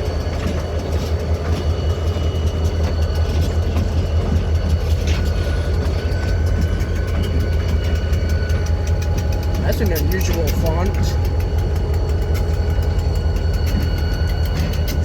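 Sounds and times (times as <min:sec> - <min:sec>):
moving vehicle rumble: 0:00.0 - 0:15.0
faint clicks: 0:04.7 - 0:15.0.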